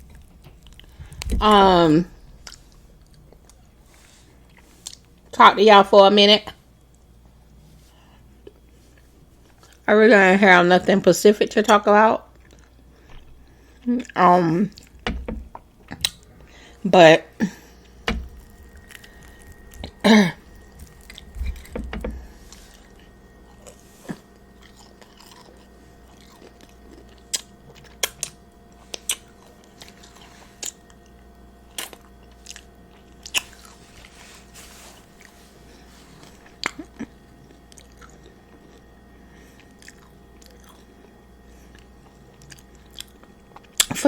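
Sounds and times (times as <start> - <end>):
biting and chewing fried chicken: 12.3 - 16.8, 17.6 - 44.0.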